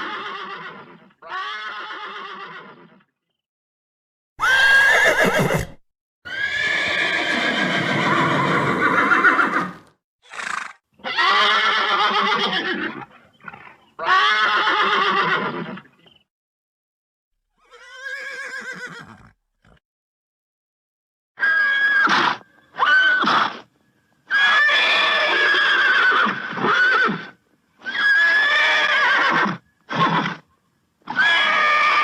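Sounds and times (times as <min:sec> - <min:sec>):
horse neighing: 0:04.4 - 0:15.9, 0:17.6 - 0:19.8.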